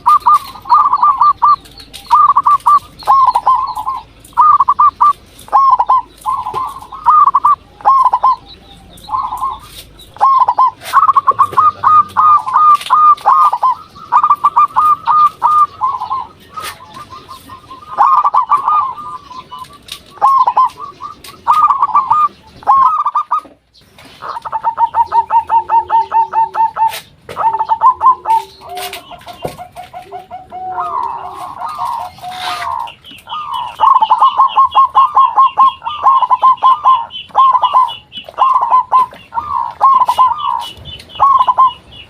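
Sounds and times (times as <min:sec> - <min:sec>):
doves cooing: 0:00.0 - 0:42.0.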